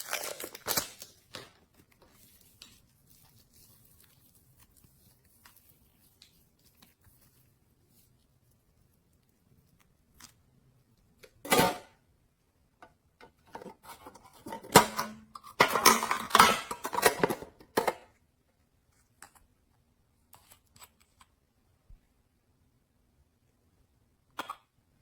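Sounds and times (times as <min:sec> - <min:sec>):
slime squelch: 0:00.0 - 0:11.4.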